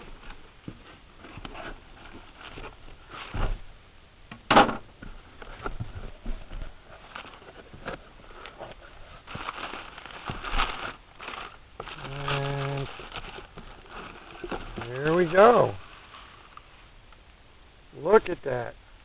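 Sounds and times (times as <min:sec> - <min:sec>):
cardboard box rustling and knocking: 0:05.0 - 0:15.4.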